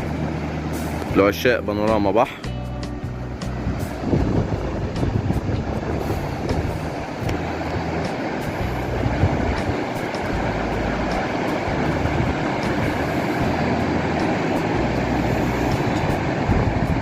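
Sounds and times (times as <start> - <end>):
low rumbles: 0.0 - 17.0
wind buffeting microphone: 0.0 - 17.0.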